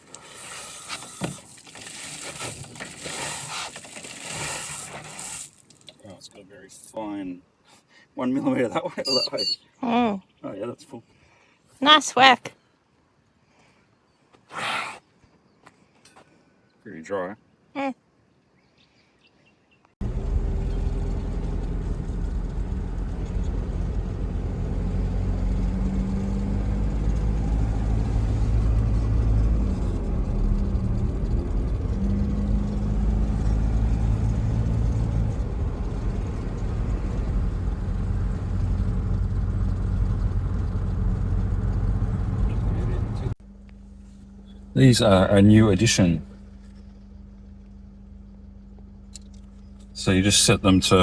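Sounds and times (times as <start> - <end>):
road noise: 20.0 - 43.5
car engine while driving: 20.0 - 43.6.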